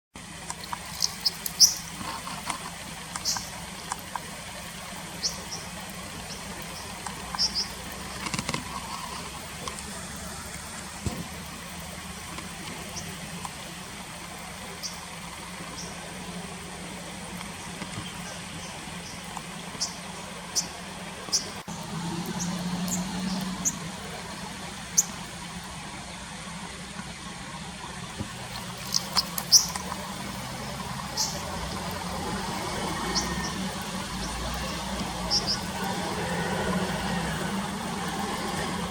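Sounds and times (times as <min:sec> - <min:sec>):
stream rushing: 0:00.2 - 0:38.9
high-pitched bird chirps: 0:01.0 - 0:01.9.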